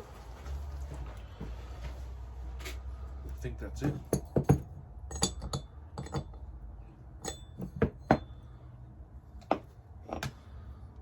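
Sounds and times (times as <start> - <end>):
metal tools clicking and knocking: 3.8 - 6.5, 7.2 - 8.4.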